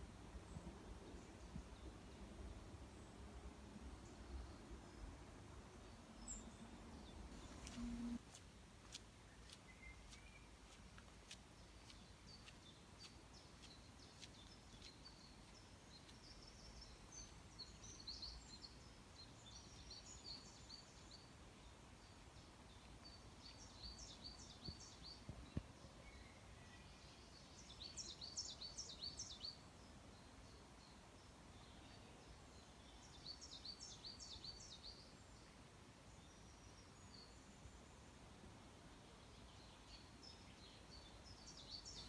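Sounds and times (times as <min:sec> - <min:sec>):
birds chirping: 0:07.3 - 0:08.3.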